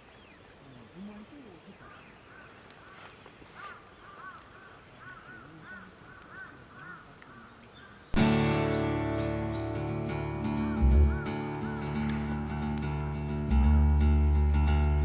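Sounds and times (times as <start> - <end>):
bird calling: 0.0 - 8.2, 9.2 - 13.7
music: 8.2 - 15.0.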